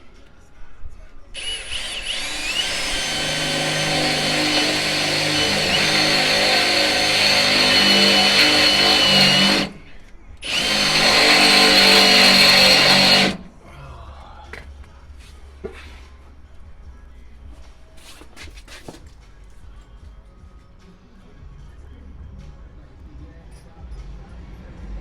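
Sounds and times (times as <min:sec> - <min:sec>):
cordless drill boring steel: 0:01.4 - 0:13.5.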